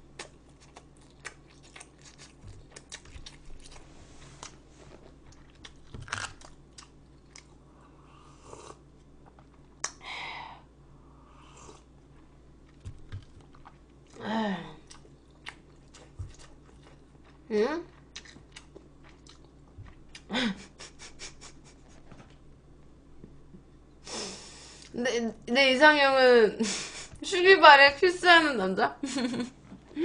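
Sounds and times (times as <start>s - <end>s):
chewing and crunching food: 0.0s - 7.9s, 8.7s - 10.0s, 11.7s - 14.2s, 14.8s - 20.3s.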